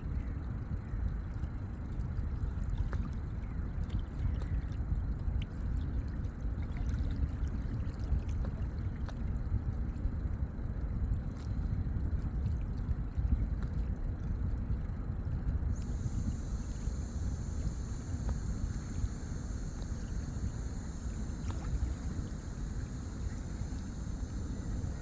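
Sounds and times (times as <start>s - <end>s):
thin high whine: 15.6s - 25.0s
steady low rumble: 15.7s - 25.0s.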